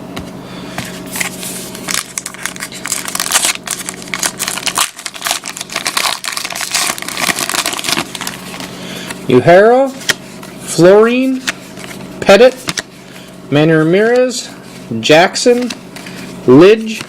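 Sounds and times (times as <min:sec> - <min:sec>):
faint steady hum: 0:00.0 - 0:17.0
wrapper crinkling and tearing: 0:01.2 - 0:08.7.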